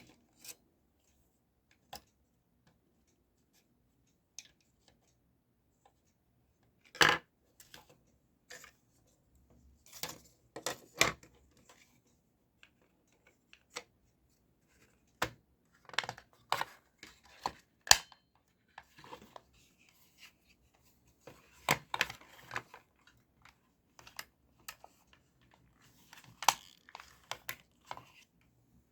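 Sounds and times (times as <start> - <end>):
plastic toy parts clicking: 26.0 - 28.0.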